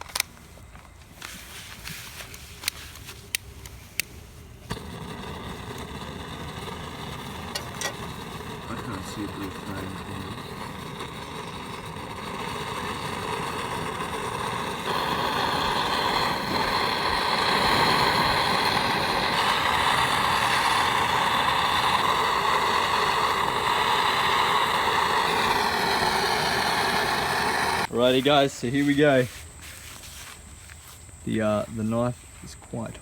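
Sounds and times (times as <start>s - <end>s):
gas torch flame blowing: 1.7s - 28.0s.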